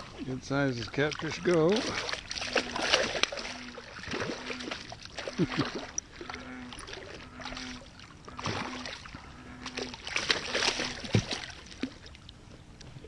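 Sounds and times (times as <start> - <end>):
water splashing and sloshing: 0.0 - 13.0
short low hum: 1.8 - 11.2.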